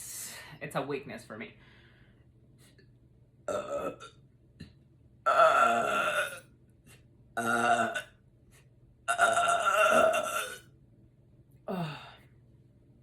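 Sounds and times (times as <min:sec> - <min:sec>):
woman belching: 0:03.5 - 0:04.1, 0:05.3 - 0:06.4, 0:07.4 - 0:08.1, 0:09.1 - 0:10.6.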